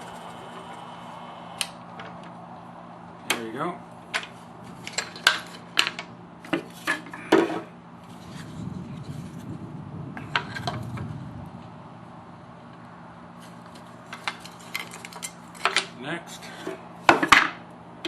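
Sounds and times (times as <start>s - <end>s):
low rubbing noise: 0.0s - 2.7s, 8.0s - 12.6s
clicks and knocks of metal and wood: 4.1s - 8.4s, 13.4s - 17.7s.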